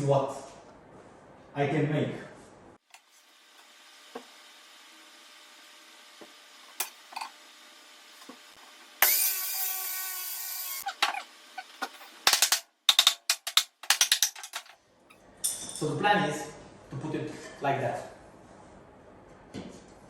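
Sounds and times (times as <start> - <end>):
power tool motor whine: 3.2 - 11.8.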